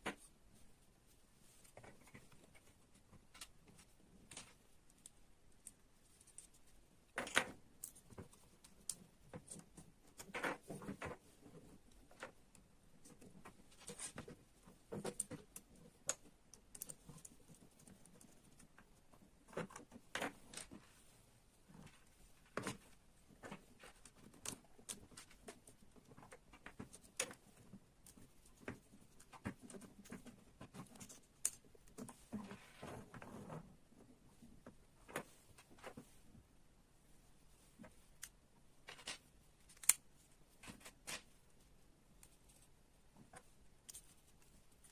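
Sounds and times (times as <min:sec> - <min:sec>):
plastic parts clicking and tapping: 0:07.1 - 0:20.8, 0:37.8 - 0:41.3.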